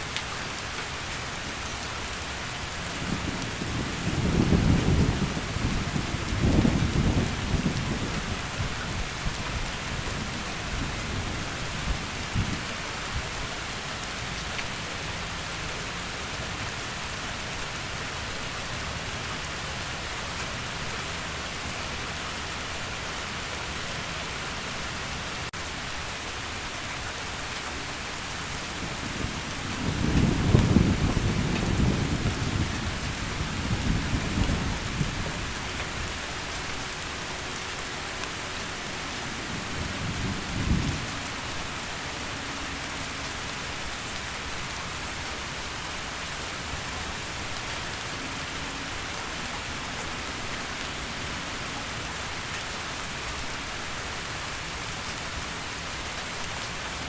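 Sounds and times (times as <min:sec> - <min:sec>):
heavy rain falling: 0:00.0 - 0:57.0
thunder rumbling: 0:02.8 - 0:09.3, 0:28.8 - 0:36.4.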